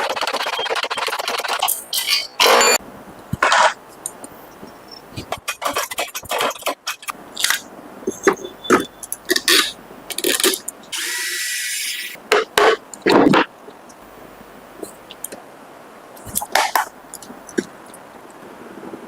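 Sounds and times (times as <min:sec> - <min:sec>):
steady hiss: 0:02.8 - 0:19.0
small hard parts clicking and scraping: 0:03.2 - 0:11.1.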